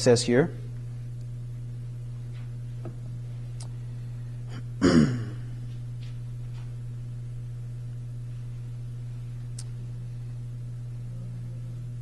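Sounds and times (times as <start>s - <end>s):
low electrical hum: 0.0s - 12.0s
person sighing: 4.5s - 5.5s.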